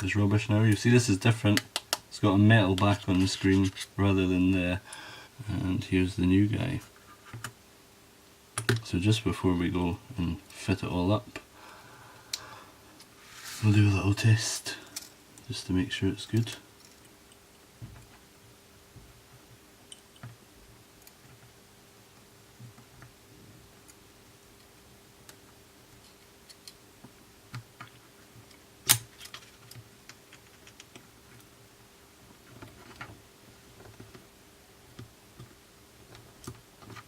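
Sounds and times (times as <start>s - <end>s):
faint steady hum: 0.0s - 37.0s
small parts clicking and tapping: 24.6s - 31.5s.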